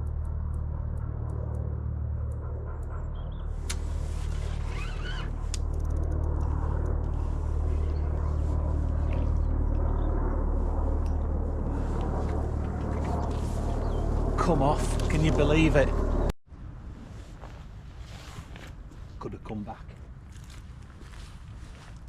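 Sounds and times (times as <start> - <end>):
low rumble: 0.0 - 17.9.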